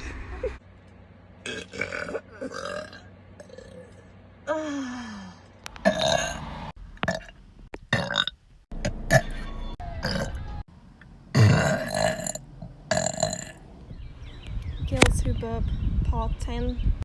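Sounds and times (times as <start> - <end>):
girls burping: 1.4 - 4.0.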